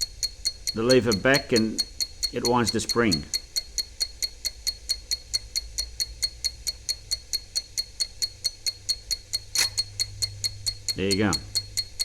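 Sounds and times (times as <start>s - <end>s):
clock ticking fast: 0.0s - 12.0s
loud click: 9.5s - 10.0s.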